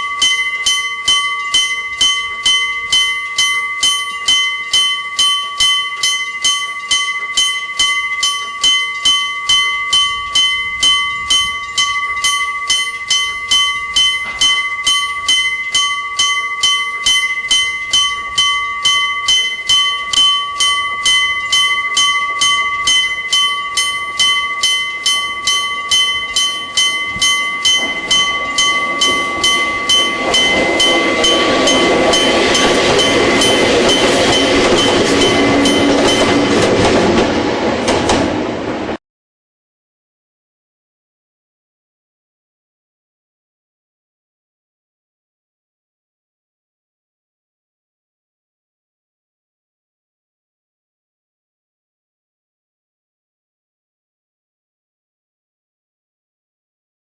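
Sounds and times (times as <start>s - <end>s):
level crossing bell ringing: 0.0s - 37.4s
train passing: 0.0s - 39.0s.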